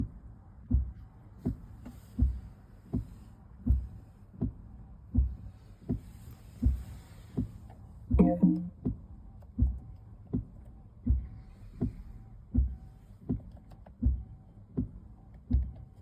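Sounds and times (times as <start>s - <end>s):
short pitched tone: 8.2s - 8.7s.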